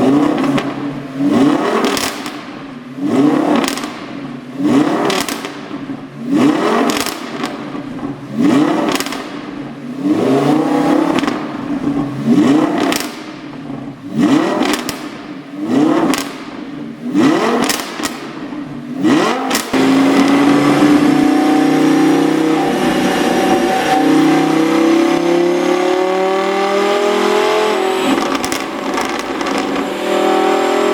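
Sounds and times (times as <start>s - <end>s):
car engine revving: 0.0s - 30.9s
exhaust pops and crackles: 0.2s - 9.8s, 11.0s - 20.6s, 28.1s - 29.9s.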